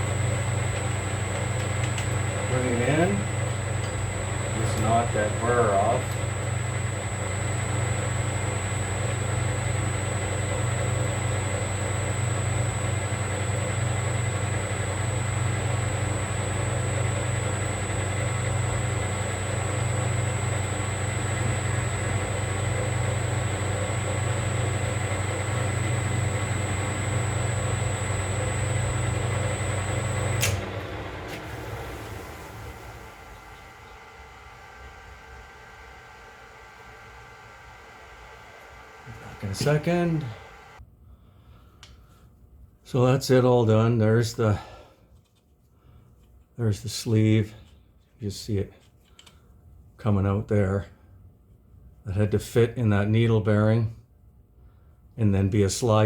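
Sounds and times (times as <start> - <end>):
metal lathe humming and whining: 0.0 - 40.8
switch click: 30.3 - 30.7.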